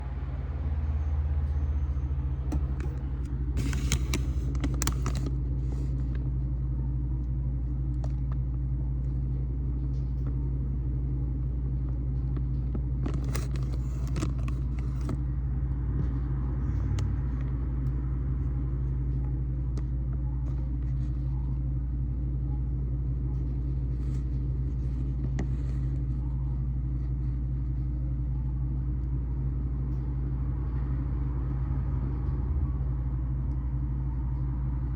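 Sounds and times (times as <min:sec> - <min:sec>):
steady low rumble: 0:00.0 - 0:34.9.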